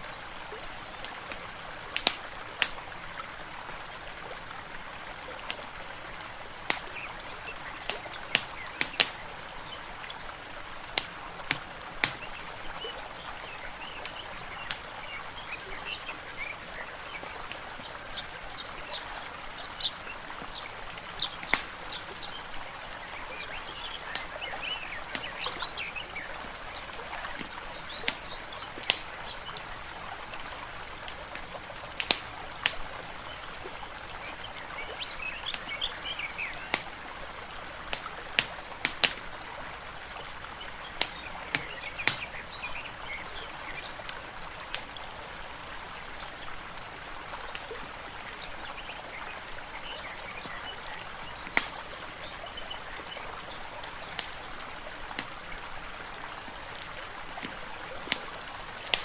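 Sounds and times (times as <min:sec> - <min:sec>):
water flowing: 0:00.0 - 0:59.0
birds chirping: 0:06.8 - 0:10.4, 0:11.4 - 0:32.4, 0:33.0 - 0:36.9, 0:40.2 - 0:44.0, 0:47.3 - 0:54.6
wood fire crackling and popping: 0:20.9 - 0:22.1, 0:26.7 - 0:29.1, 0:56.8 - 0:59.0.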